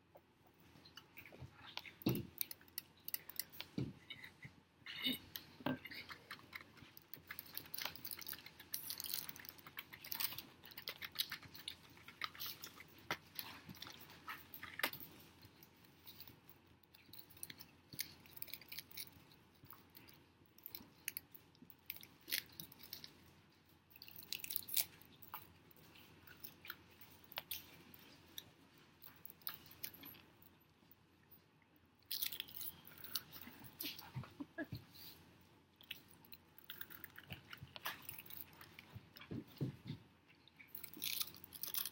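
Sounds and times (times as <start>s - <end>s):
chewing crisp seaweed: 5.0s - 23.3s, 23.9s - 30.4s, 35.8s - 39.6s, 40.3s - 41.9s.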